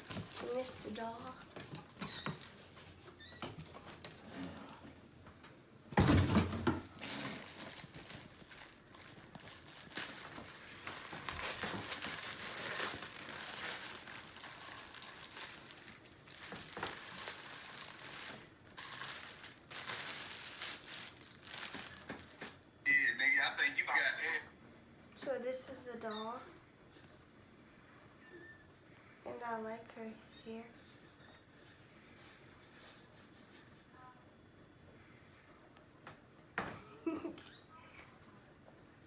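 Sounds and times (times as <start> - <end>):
packaging crumpling: 0.0 - 1.1, 6.9 - 22.7
packaging crinkling and rustling: 0.0 - 4.5, 6.0 - 22.8.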